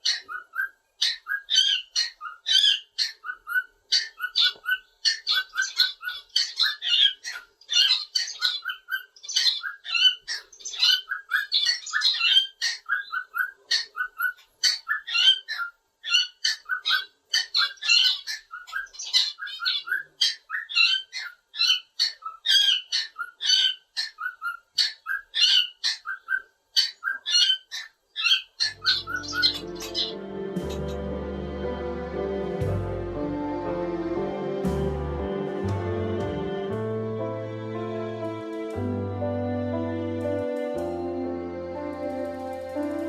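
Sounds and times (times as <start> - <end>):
cockatiel chirping and whistling: 0.1 - 30.1.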